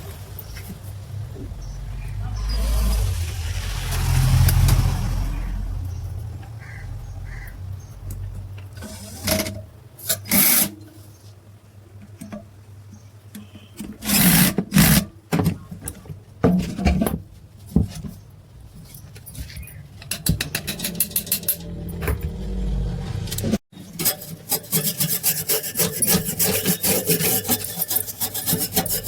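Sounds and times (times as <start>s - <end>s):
tools and parts being handled: 15.8s - 22.6s, 23.4s - 29.0s.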